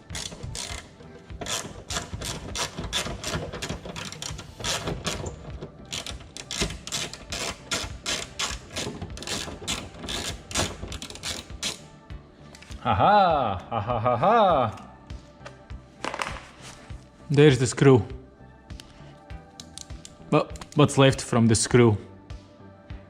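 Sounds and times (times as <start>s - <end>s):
ratchet clicking: 0.0s - 11.9s.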